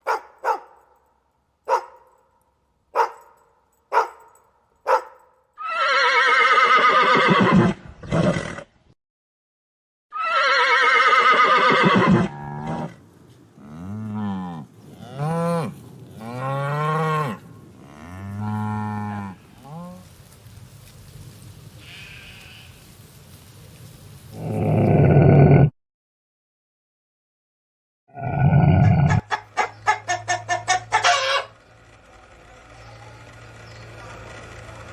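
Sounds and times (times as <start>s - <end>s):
horse whinnies: 5.6s - 8.7s, 10.1s - 12.9s
cattle mooing: 12.0s - 13.0s, 13.6s - 20.1s.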